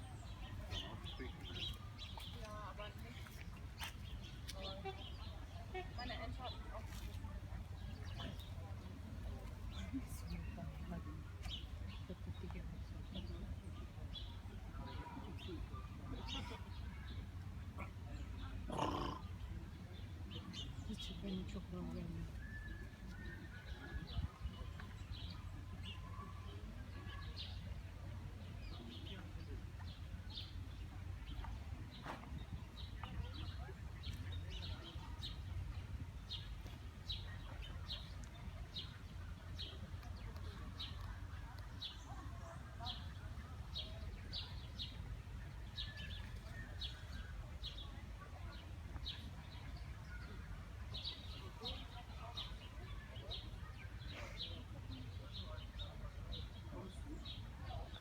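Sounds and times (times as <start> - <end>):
birds chirping: 18.4 - 19.4.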